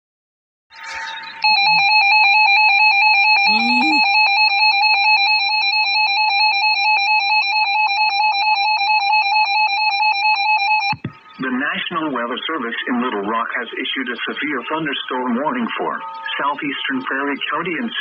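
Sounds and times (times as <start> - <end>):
harsh two-tone alarm: 0.8 - 11.4.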